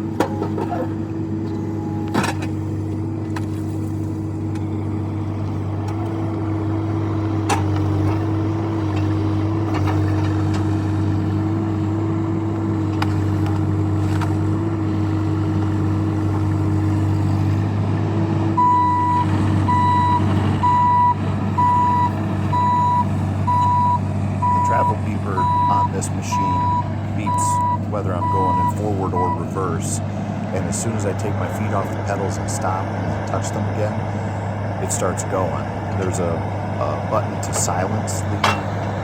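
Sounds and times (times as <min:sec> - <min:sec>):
diesel engine running: 0:00.0 - 0:39.0
travel alarm beeping: 0:18.6 - 0:29.6.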